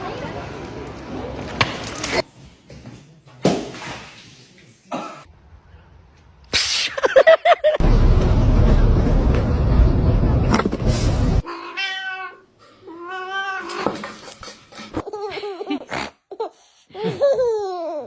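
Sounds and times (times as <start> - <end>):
loud rushing noise: 7.8 - 11.4
cat meowing: 11.4 - 13.9.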